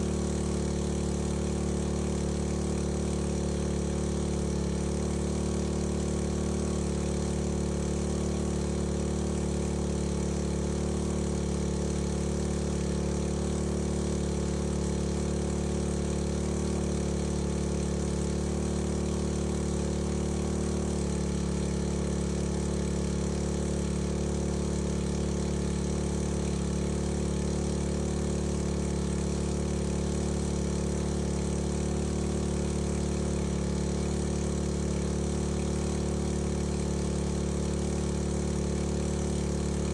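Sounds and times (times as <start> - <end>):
small petrol pump engine running: 0.0 - 39.9.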